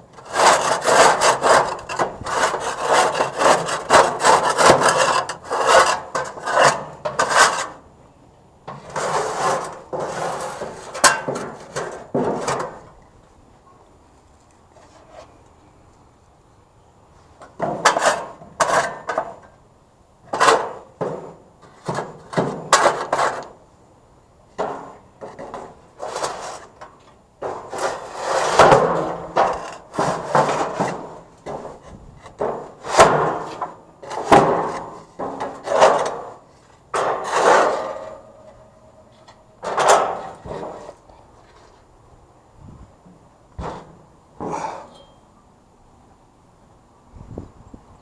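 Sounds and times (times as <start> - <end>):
grill being scraped: 0.1 - 7.8, 8.7 - 12.7, 25.3 - 31.7, 37.0 - 41.0.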